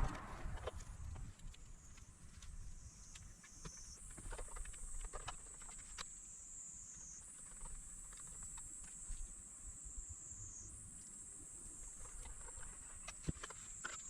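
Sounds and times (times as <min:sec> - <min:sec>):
high-pitched electronic whine: 0:00.0 - 0:01.3.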